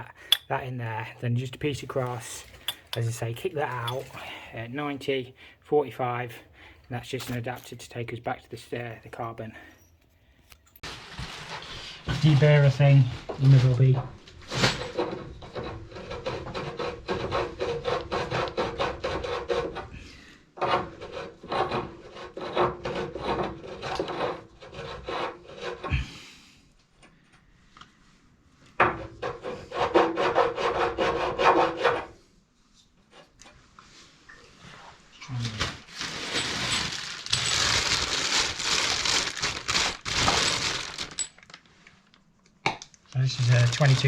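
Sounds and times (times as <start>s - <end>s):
deburring tool scraping pipe: 0.2s - 0.6s, 1.8s - 4.4s, 14.4s - 20.0s, 20.6s - 26.0s, 36.0s - 38.1s.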